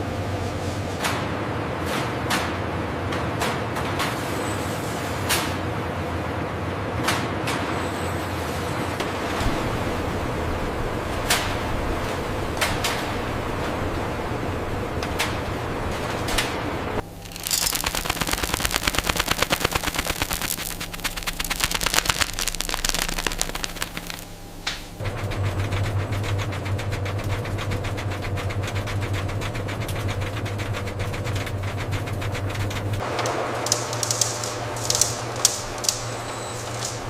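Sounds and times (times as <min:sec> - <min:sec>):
low machine hum: 0:08.7 - 0:37.0
machinery rattling clicks: 0:17.2 - 0:24.2, 0:32.4 - 0:37.0.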